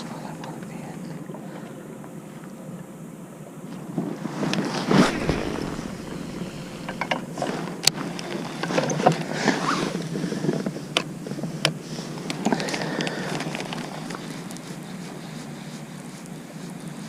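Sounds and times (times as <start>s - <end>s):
rustling and handling noise: 9.9s - 17.0s.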